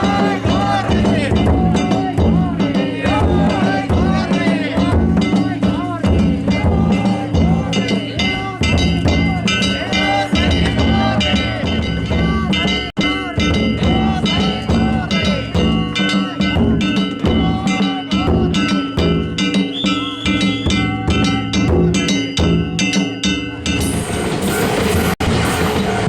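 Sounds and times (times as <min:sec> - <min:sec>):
hand gongs clanging: 0:00.0 - 0:25.2
taiko drum beats: 0:00.0 - 0:26.0.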